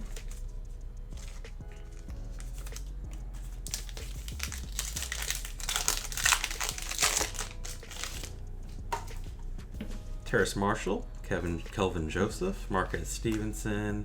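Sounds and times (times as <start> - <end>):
wrapper crinkling: 1.2 - 8.3.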